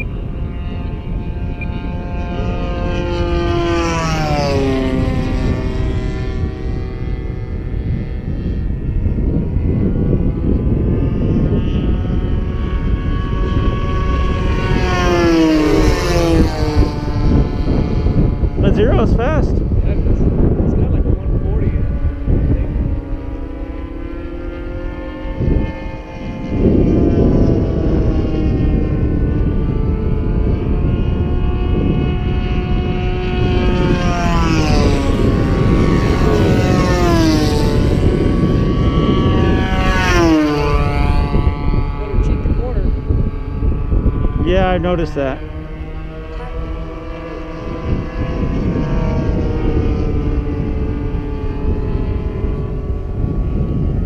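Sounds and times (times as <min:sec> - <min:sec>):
low rumble: 0:00.0 - 0:54.0
model plane engine flying past: 0:00.0 - 0:54.0.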